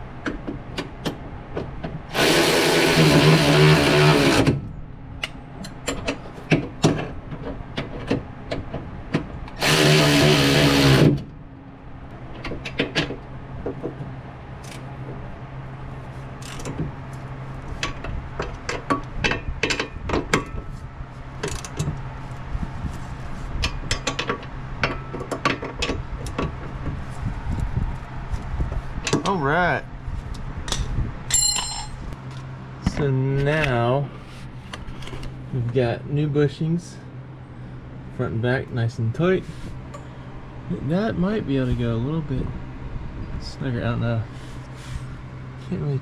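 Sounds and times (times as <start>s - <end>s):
power tool running: 2.1s - 4.6s, 9.5s - 11.3s.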